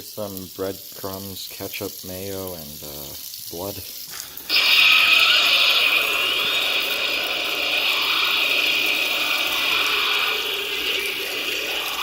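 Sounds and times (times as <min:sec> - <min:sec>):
high-pressure water jet hissing: 0:04.5 - 0:12.0.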